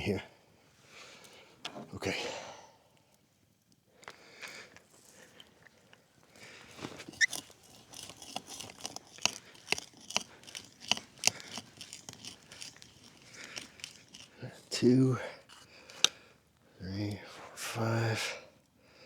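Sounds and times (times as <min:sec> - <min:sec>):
hand drill boring into log: 0:06.7 - 0:16.2.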